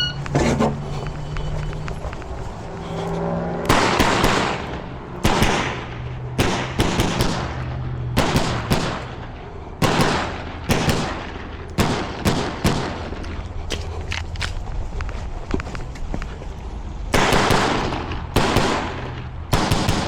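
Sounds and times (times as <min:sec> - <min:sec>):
pistol shots echoing: 0:03.7 - 0:13.2, 0:17.1 - 0:20.0.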